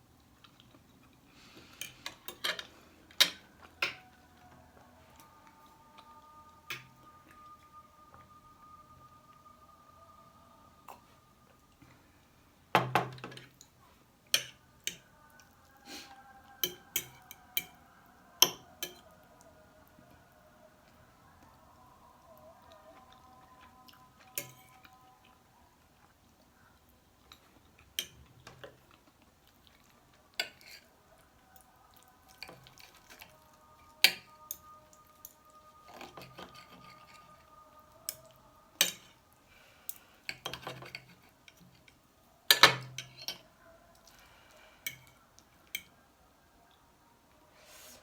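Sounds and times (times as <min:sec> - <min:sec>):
cutlery and dishes clinking: 0:01.8 - 0:04.2, 0:16.6 - 0:17.8, 0:18.4 - 0:19.1, 0:24.3 - 0:25.0, 0:30.4 - 0:30.9, 0:34.0 - 0:37.4, 0:38.1 - 0:39.2, 0:39.9 - 0:43.5.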